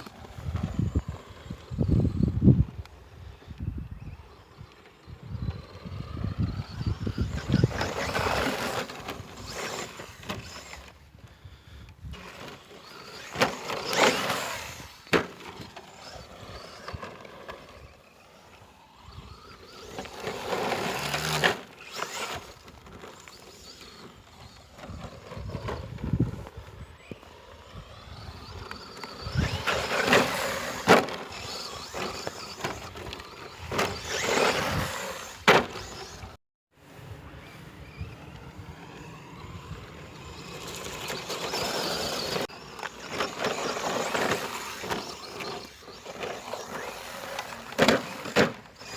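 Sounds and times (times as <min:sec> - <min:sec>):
rc truck motor whine: 0:00.0 - 0:48.9
tyre noise: 0:12.0 - 0:36.4, 0:37.9 - 0:48.9.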